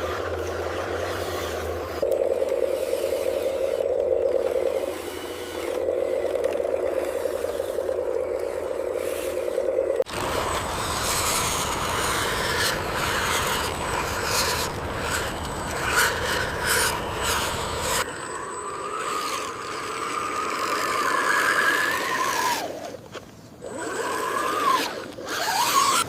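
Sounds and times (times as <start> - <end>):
electric motor whine: 0.0 - 23.0.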